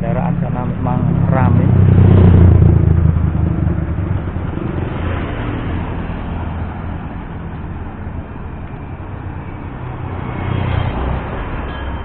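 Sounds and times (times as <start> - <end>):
car engine running: 0.0 - 9.2.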